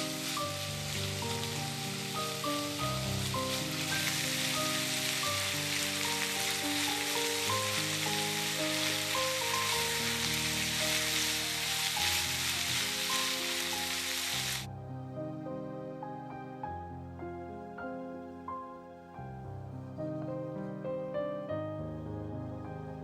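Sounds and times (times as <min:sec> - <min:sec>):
food sizzling in a frying pan: 0:00.0 - 0:14.7
soft instrumental music: 0:00.0 - 0:23.0.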